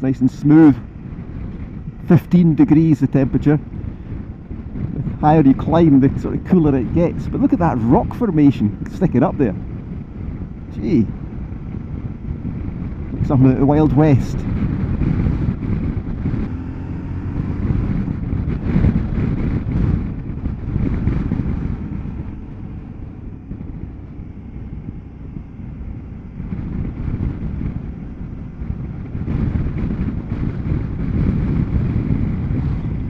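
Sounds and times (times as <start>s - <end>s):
motorcycle engine running: 0.0s - 33.0s
wind rushing over microphone: 0.0s - 33.0s.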